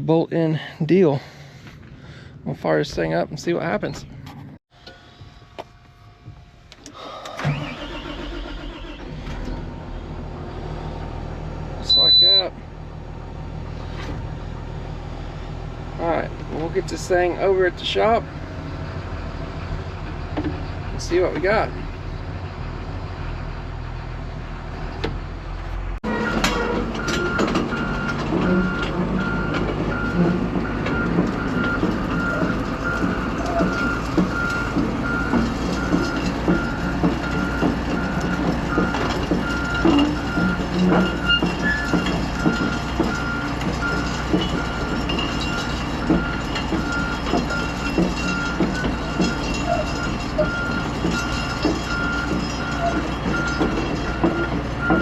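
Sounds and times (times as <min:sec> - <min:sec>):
diesel engine running: 0:00.4 - 0:55.0
reversing alarm beeping: 0:11.9 - 0:12.5, 0:26.1 - 0:55.0
clanking of tracks: 0:26.0 - 0:55.0.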